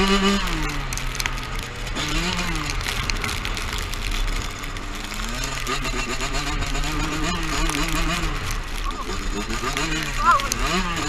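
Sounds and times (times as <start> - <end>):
crackling noise: 0.0 - 11.0
dirt bike engine revving: 0.0 - 11.0.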